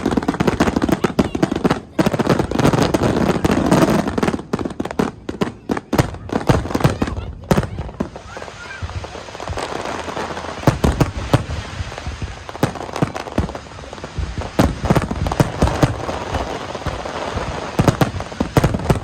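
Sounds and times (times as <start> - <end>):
fireworks cracking and banging: 0.0 - 19.0.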